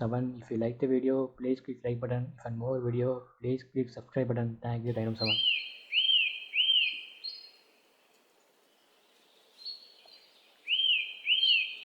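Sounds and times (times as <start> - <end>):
bird whistled chirp: 5.2 - 7.6, 9.5 - 11.9.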